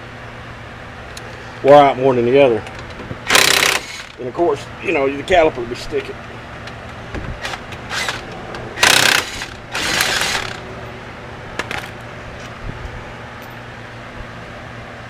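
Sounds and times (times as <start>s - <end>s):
ratchet wrench clicking: 3.3s - 4.2s, 7.5s - 10.6s.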